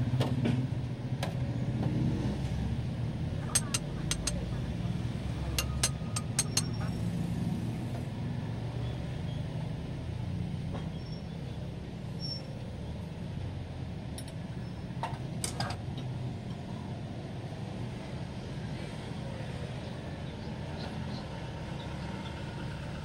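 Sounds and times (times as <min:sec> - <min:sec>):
engine idling: 0:03.0 - 0:07.2
sharp clicks: 0:03.4 - 0:04.5, 0:05.6 - 0:06.8.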